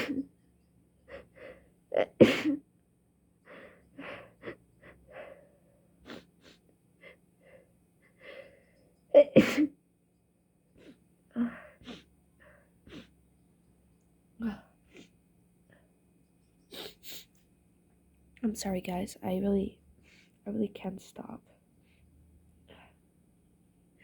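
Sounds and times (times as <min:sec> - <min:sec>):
person sneezing hard: 0:09.3 - 0:09.7
breathy sounds: 0:10.8 - 0:13.1.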